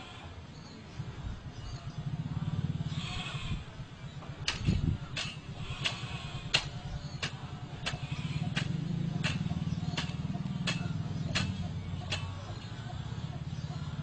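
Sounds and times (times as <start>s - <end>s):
low engine rumble: 0.0s - 14.0s
sharp ticking: 4.5s - 13.5s.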